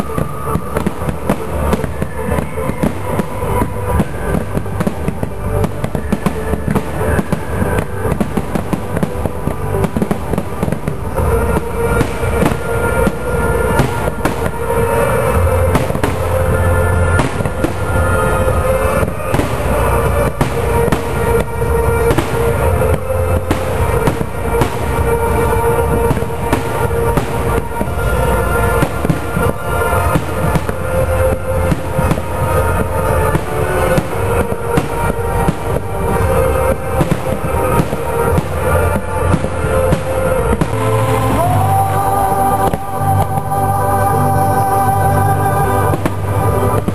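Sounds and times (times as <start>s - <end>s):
fireworks bangs and crackles: 0.0s - 46.9s
music playing: 0.0s - 46.9s.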